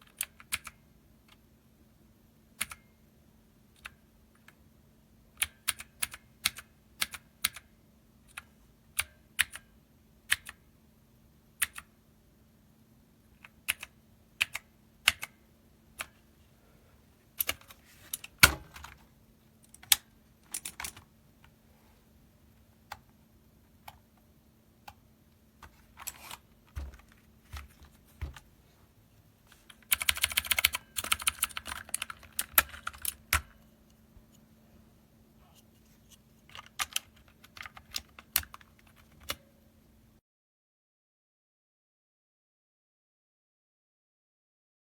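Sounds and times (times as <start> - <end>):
clicky mechanical keyboard typing: 0.0 - 1.4, 5.4 - 7.7, 10.3 - 10.6, 11.6 - 11.9, 13.4 - 15.4, 17.4 - 19.0, 19.7 - 21.6, 29.6 - 33.7, 36.5 - 39.4.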